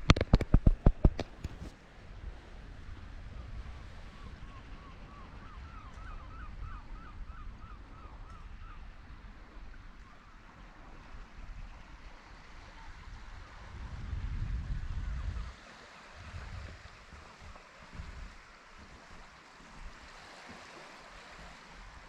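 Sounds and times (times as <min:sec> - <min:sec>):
wind on microphone: 0:00.0 - 0:20.3
sea rumble: 0:00.0 - 0:22.0
gull calling: 0:04.1 - 0:09.0.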